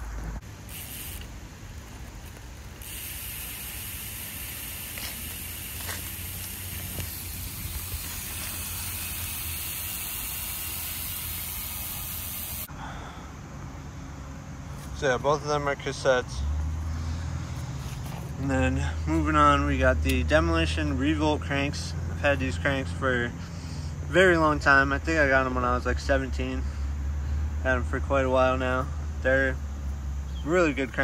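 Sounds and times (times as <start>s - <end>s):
bicycle hub ratcheting buzz: 0.4s - 12.7s.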